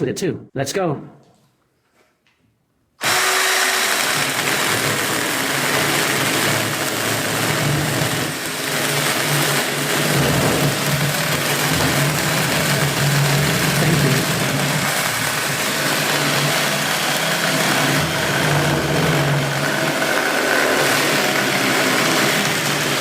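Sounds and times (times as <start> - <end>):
drill motor hum: 3.0 - 23.0.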